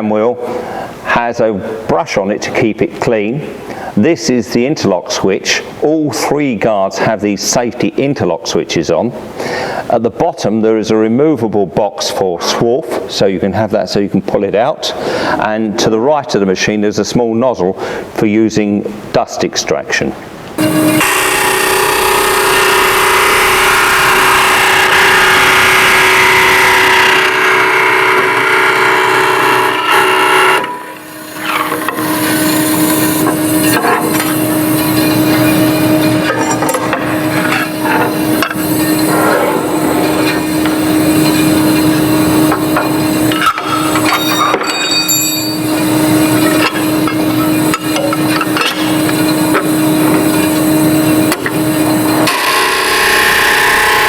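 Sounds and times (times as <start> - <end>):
bandsaw cutting noise: 20.6 - 54.0
bandsaw machine hum: 20.6 - 54.0.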